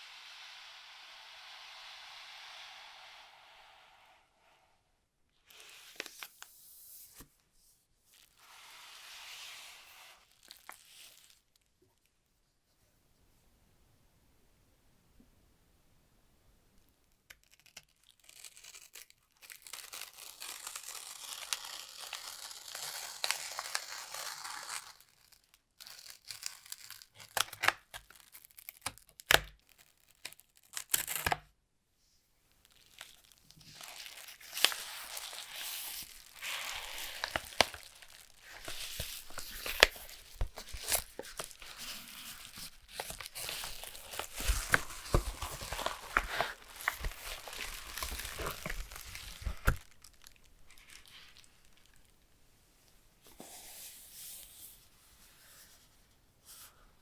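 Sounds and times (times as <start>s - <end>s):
packaging tearing and rustling: 10.2s - 11.6s, 17.4s - 31.4s, 32.6s - 52.1s.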